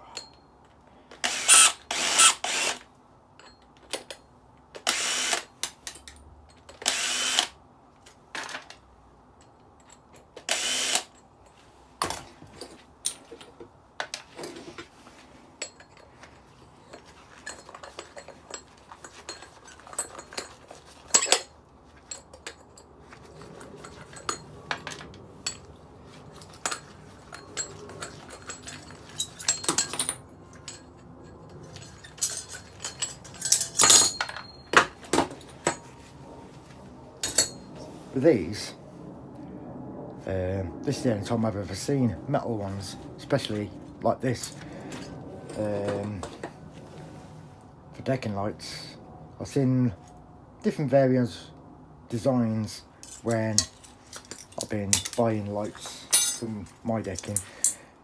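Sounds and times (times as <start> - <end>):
cordless drill running: 1.2 - 2.8, 4.9 - 5.5, 6.9 - 7.5, 10.5 - 11.1
small metal parts clinking: 15.6 - 36.0, 37.2 - 37.7, 53.0 - 57.9.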